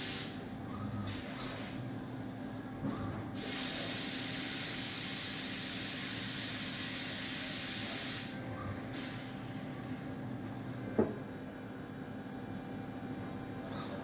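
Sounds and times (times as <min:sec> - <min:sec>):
coolant spray hiss: 0:03.4 - 0:08.3.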